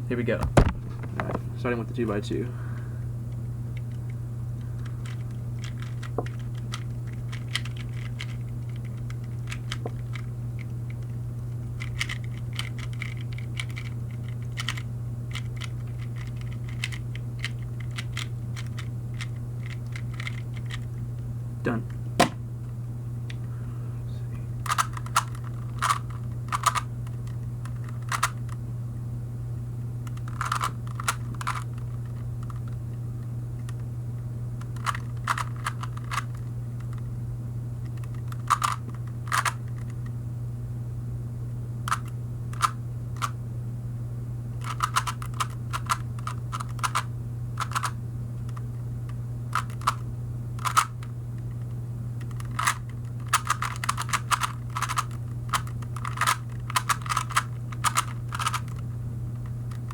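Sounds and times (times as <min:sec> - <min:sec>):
steady low hum: 0:00.0 - 0:59.9
puzzle cube plastic clicks: 0:03.8 - 0:20.9, 0:24.6 - 0:28.6, 0:30.0 - 0:32.8, 0:34.6 - 0:37.1, 0:37.8 - 0:40.0, 0:41.9 - 0:43.4, 0:44.6 - 0:48.7, 0:49.5 - 0:50.0, 0:50.6 - 0:59.9.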